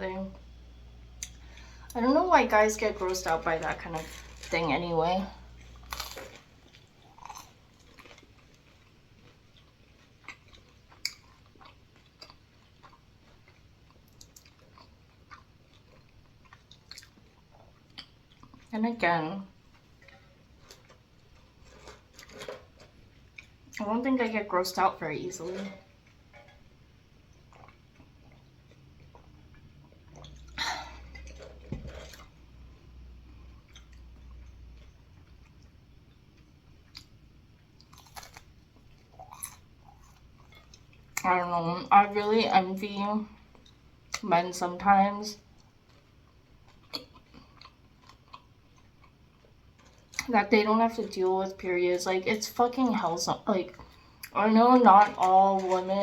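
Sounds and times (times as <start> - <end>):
chewing food: 2.6 - 18.8, 19.5 - 23.9, 25.4 - 41.4, 45.4 - 51.7
food being handled: 2.9 - 9.4, 19.8 - 23.0.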